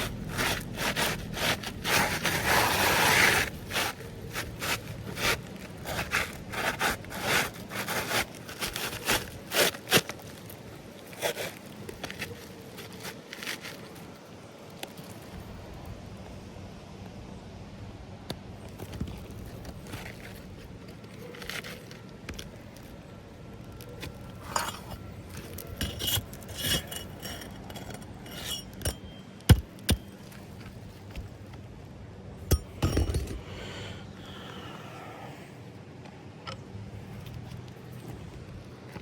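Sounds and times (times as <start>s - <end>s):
tools clinking and scraping shingles: 23.9s - 31.4s, 32.5s - 33.6s.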